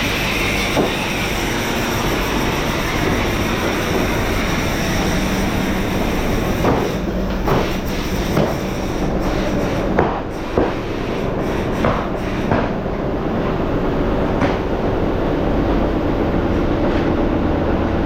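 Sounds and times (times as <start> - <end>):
factory machinery rumble and hiss: 0.0 - 18.0
sharp knocks: 6.6 - 8.7.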